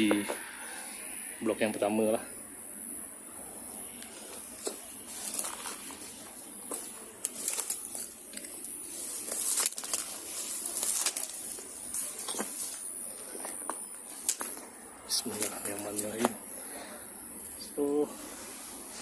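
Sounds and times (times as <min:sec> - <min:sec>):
faint high insect whine: 0:00.0 - 0:19.0
dry leaves crackling and rustling: 0:04.1 - 0:13.4, 0:14.1 - 0:16.2.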